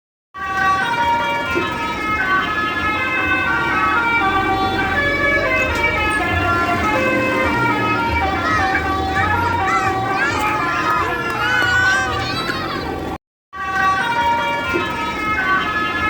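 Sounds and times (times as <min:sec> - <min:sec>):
musical air horn melody: 0:00.4 - 0:12.1.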